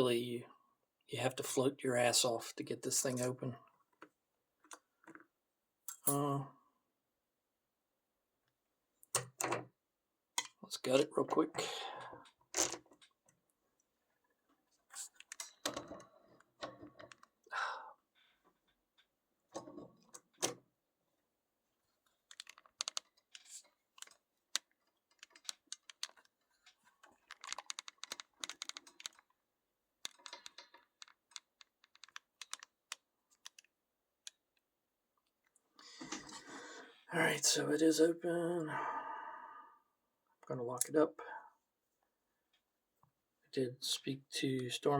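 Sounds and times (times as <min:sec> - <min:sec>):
lock parts clicking and tapping: 0:09.0 - 0:09.7, 0:12.2 - 0:13.4, 0:15.0 - 0:17.4, 0:22.2 - 0:29.4, 0:30.0 - 0:34.6.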